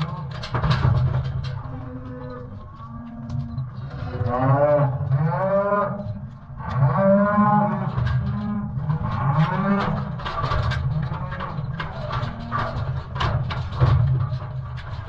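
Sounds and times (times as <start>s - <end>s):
cattle mooing: 1.6s - 10.2s.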